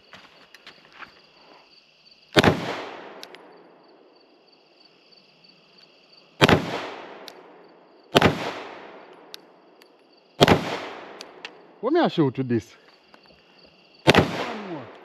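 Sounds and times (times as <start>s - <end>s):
gunshots with echo: 2.4s - 3.2s, 6.4s - 7.3s, 8.1s - 9.1s, 10.4s - 11.4s, 14.0s - 15.0s.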